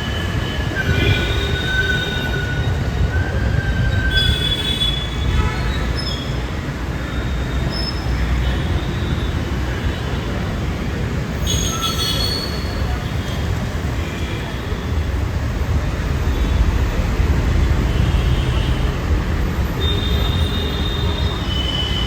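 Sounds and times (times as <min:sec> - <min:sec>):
high wheel squeal: 0:00.0 - 0:10.0, 0:11.4 - 0:14.9, 0:17.8 - 0:22.0
train rumble: 0:12.4 - 0:22.0.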